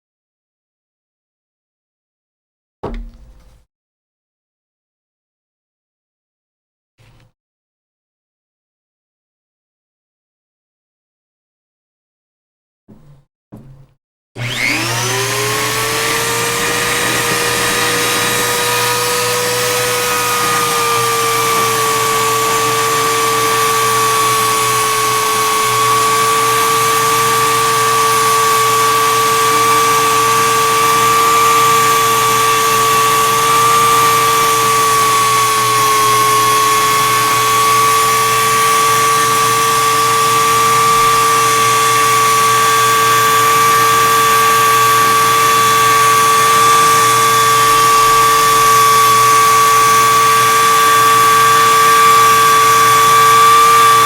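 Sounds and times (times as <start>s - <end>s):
power tool whining: 14.4s - 54.0s.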